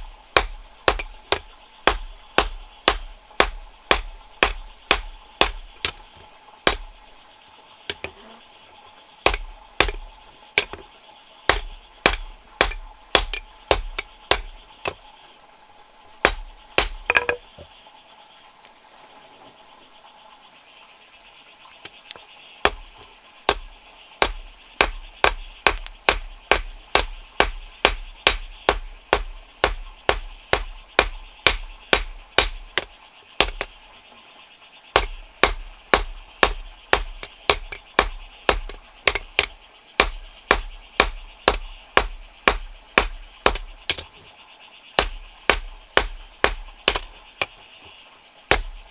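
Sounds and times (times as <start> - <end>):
hand hammer striking: 0.4 - 6.0, 9.3 - 10.0, 11.5 - 14.5, 24.2 - 33.7, 35.0 - 44.0, 45.0 - 47.5.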